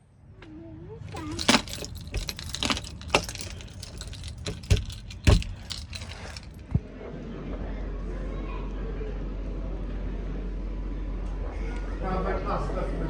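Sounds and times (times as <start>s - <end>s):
keys jangling: 1.1s - 6.7s
sharp clicks and knocks: 1.2s - 6.6s.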